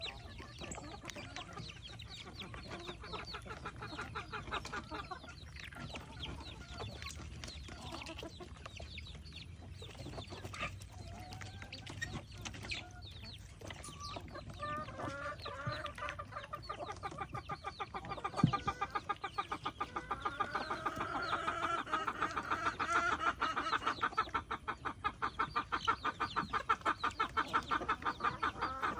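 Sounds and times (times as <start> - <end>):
fowl clucking: 0.0 - 28.9.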